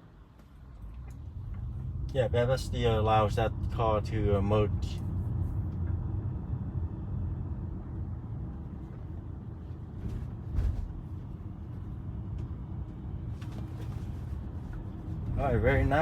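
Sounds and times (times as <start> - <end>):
road and tyre rumble: 0.0 - 16.0
short thump: 10.0 - 11.1.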